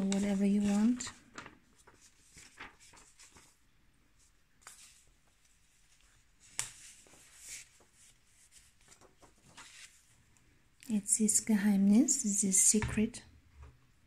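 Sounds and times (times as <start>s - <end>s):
paper rustling: 0.0s - 10.2s.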